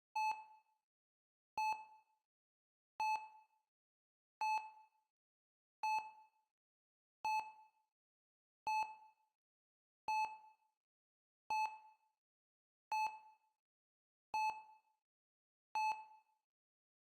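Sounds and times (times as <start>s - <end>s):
heart rate monitor beeping: 0.2s - 0.5s.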